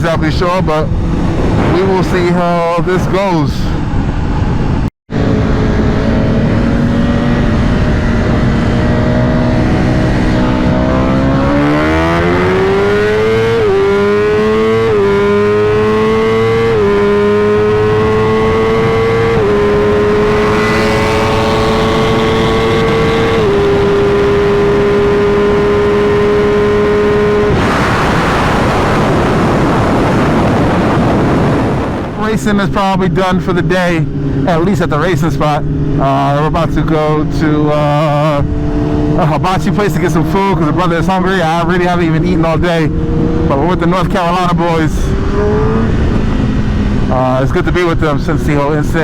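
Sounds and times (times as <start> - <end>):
motorcycle engine revving: 0.0 - 2.8, 3.8 - 32.5, 33.6 - 49.0
steady rushing noise: 0.0 - 13.2, 27.0 - 49.0.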